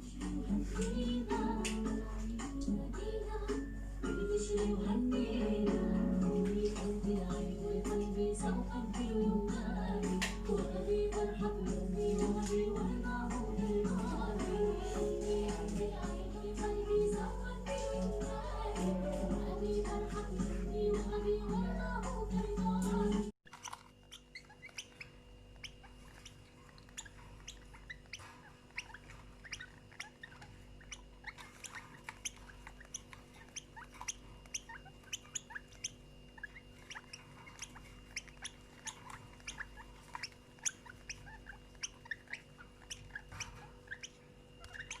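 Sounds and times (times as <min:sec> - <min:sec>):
faint steady hum: 0:00.0 - 0:45.0
small birds chirping: 0:00.0 - 0:45.0.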